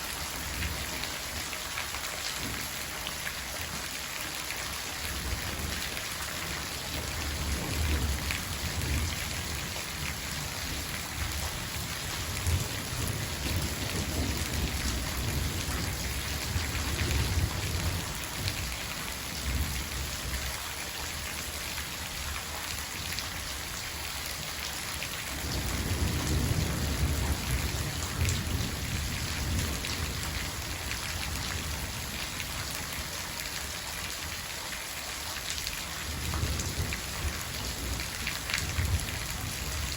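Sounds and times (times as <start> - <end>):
steady rain falling: 0.0 - 39.9
thunder rumbling: 25.4 - 32.2, 36.1 - 39.9.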